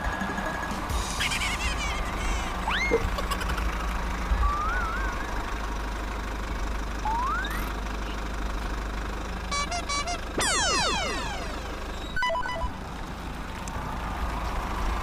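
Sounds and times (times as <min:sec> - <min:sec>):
low engine rumble: 0:00.0 - 0:15.0
rising whistle: 0:04.4 - 0:05.4, 0:07.0 - 0:07.8, 0:09.6 - 0:12.7
wavering whistle: 0:04.4 - 0:05.4, 0:07.0 - 0:07.8, 0:09.6 - 0:12.7
quick beeps: 0:07.0 - 0:07.8, 0:09.5 - 0:12.8.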